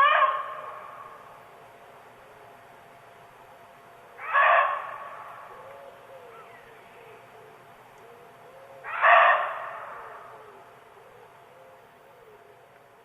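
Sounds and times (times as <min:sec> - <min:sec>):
deer barking: 0:00.0 - 0:00.9, 0:04.2 - 0:05.4, 0:08.8 - 0:10.3.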